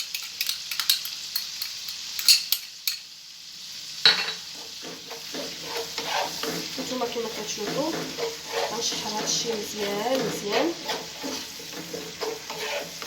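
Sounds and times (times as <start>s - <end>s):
sauce sizzling: 0.0s - 13.0s
utensil scraping frying pan: 4.0s - 13.0s.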